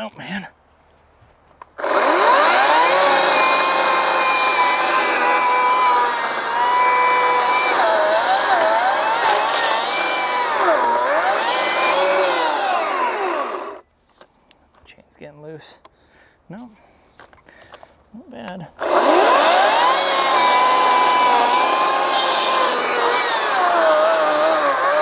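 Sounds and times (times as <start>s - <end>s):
chainsaw cutting wood: 1.8s - 13.8s, 18.8s - 25.0s.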